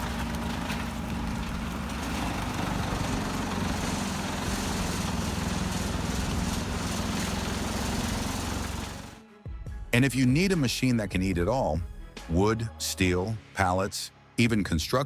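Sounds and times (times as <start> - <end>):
wood chipper drone: 0.0 - 9.2.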